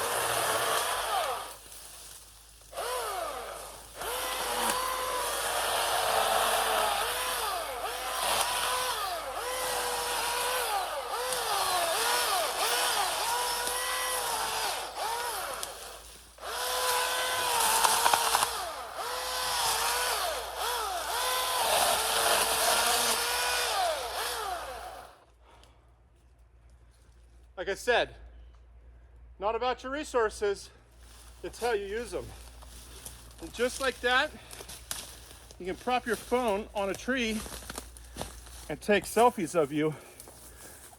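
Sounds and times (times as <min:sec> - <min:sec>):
electric chainsaw cutting wood: 0:00.0 - 0:01.6, 0:02.7 - 0:25.2.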